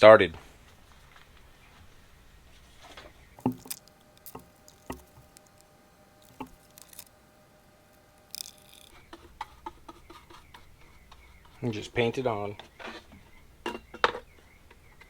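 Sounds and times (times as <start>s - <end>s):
small objects clicking on workbench: 3.4s - 7.1s, 8.1s - 11.2s.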